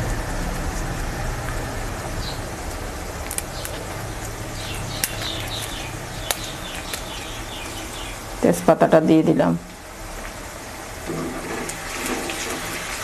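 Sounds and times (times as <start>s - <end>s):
oil crackling and popping: 0.0s - 7.9s
low steady hum: 0.0s - 12.6s.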